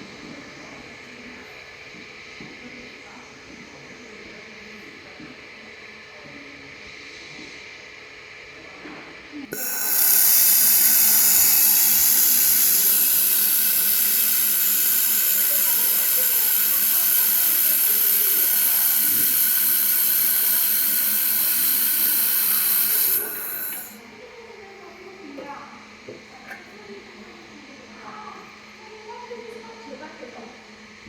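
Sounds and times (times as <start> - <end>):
faint steady whistle: 9.5 - 24.0
laser welder hissing: 9.5 - 24.0.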